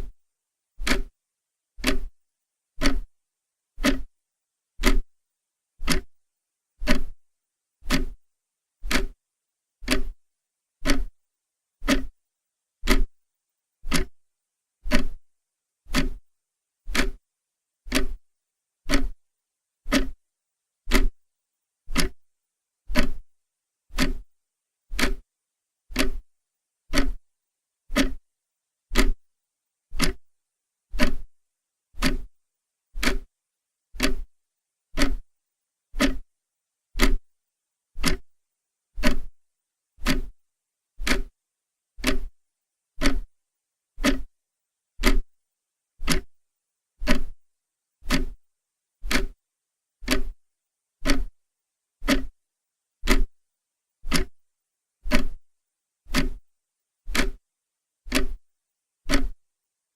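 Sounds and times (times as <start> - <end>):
clock ticking: 0.8 - 1.1, 1.8 - 2.1, 2.8 - 3.1, 3.8 - 4.1, 4.8 - 5.1, 5.8 - 6.2, 6.8 - 7.2, 7.8 - 8.2, 8.8 - 9.2, 9.8 - 10.2, 10.8 - 11.2, 11.8 - 12.1, 12.8 - 13.1, 13.9 - 14.2, 14.9 - 15.2, 15.9 - 16.2, 16.9 - 17.2, 17.9 - 18.2, 18.9 - 19.2, 19.9 - 20.2, 20.9 - 21.2, 21.9 - 22.2, 22.9 - 23.2, 23.9 - 24.2, 24.9 - 25.2, 25.9 - 26.2, 26.9 - 27.2, 27.9 - 28.2, 28.9 - 29.2, 30.0 - 30.3, 31.0 - 31.3, 32.0 - 32.3, 33.0 - 33.3, 34.0 - 34.3, 35.0 - 35.3, 36.0 - 36.2, 37.0 - 37.2, 38.0 - 38.4, 39.0 - 39.3, 40.0 - 40.4, 41.0 - 41.4, 42.0 - 42.4, 43.0 - 43.4, 44.0 - 44.3, 45.0 - 45.3, 46.0 - 46.4, 47.0 - 47.4, 48.0 - 48.4, 49.0 - 49.4, 50.0 - 50.4, 51.0 - 51.4, 52.0 - 52.4, 53.0 - 53.3, 54.1 - 54.4, 55.1 - 55.4, 56.1 - 56.4, 57.1 - 57.4, 58.1 - 58.4, 59.1 - 59.4.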